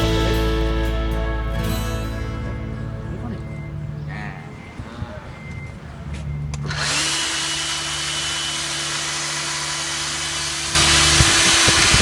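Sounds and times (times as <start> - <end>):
core drill motor whining: 5.4 - 12.0.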